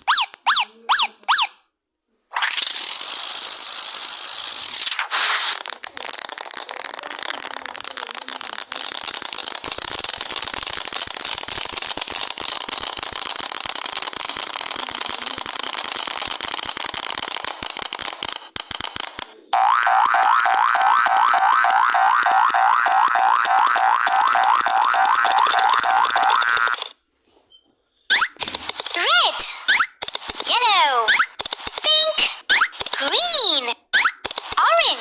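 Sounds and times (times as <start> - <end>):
rattle of tiny clicks: 5.5 - 19.5, 20.2 - 27.0, 28.4 - 29.0, 31.1 - 33.1, 34.0 - 34.6.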